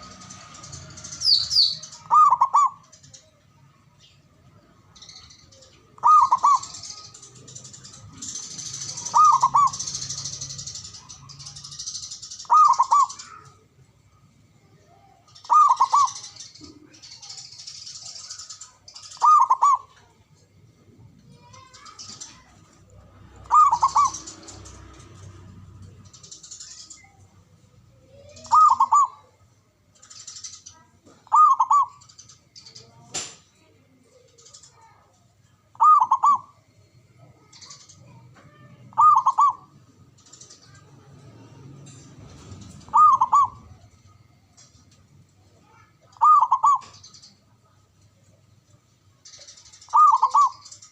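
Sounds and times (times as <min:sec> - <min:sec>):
dove cooing: 0:01.1 - 0:02.9, 0:05.8 - 0:10.8, 0:12.4 - 0:13.6, 0:15.4 - 0:17.4, 0:19.1 - 0:20.0, 0:23.4 - 0:24.8, 0:28.1 - 0:29.3, 0:31.2 - 0:32.1, 0:35.7 - 0:36.6, 0:38.9 - 0:39.8, 0:42.3 - 0:44.3, 0:46.1 - 0:47.1, 0:49.8 - 0:50.8.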